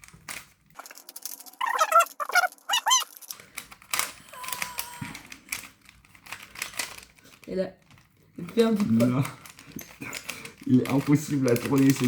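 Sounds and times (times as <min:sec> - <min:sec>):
puzzle cube clicking: 0:00.0 - 0:12.0
high-pitched vocal squeaks: 0:01.5 - 0:03.3, 0:04.2 - 0:05.3.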